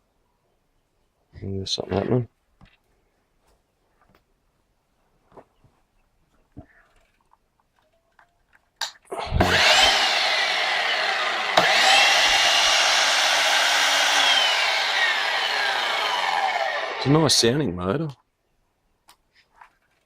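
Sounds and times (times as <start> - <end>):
mitre saw motor whine: 9.2 - 17.4
saw trigger click: 11.4 - 17.1.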